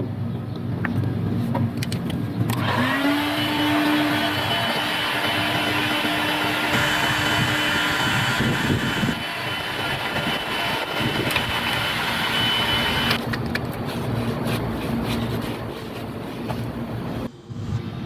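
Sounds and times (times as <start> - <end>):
power tool motor whining: 2.5 - 13.2.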